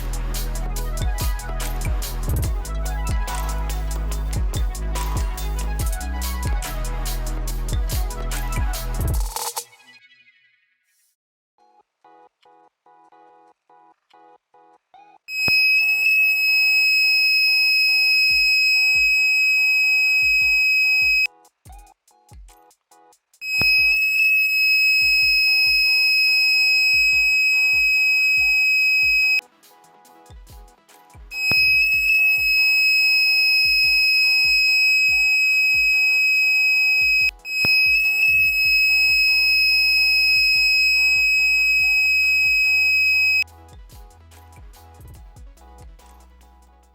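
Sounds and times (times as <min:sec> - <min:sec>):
background music with steady beat: 0:00.0 - 0:09.9, 0:18.1 - 0:46.9
high-pitched buzzer alarm: 0:15.3 - 0:21.3, 0:23.4 - 0:29.4, 0:31.3 - 0:43.4.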